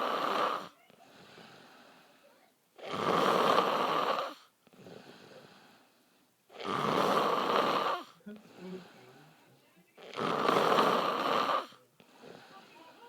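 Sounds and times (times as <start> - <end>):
man snoring loudly: 2.8 - 4.4, 6.6 - 8.1, 10.1 - 11.8.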